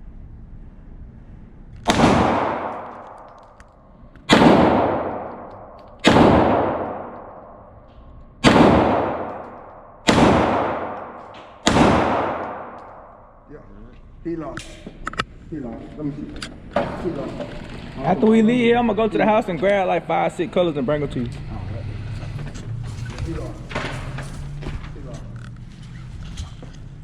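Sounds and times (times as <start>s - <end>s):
handgun shots echoing: 1.8s - 13.4s.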